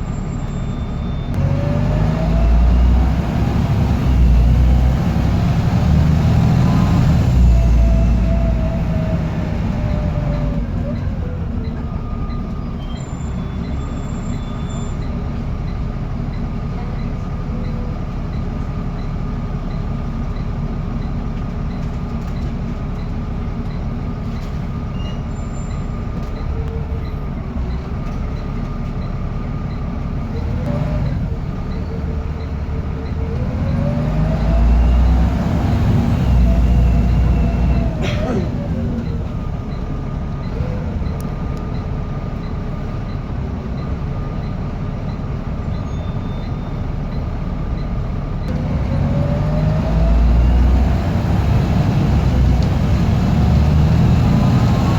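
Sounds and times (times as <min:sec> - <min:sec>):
bus engine running: 0:00.0 - 0:54.9.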